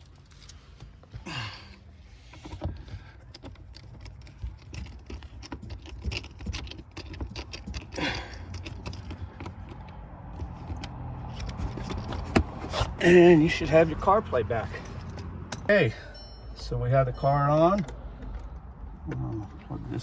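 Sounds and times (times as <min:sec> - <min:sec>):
screwdriver turning screw: 0:02.4 - 0:13.0.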